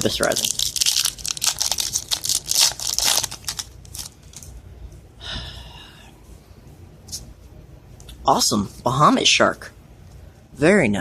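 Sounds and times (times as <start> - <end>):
foil wrapper tearing and crinkling: 0.0 - 4.5.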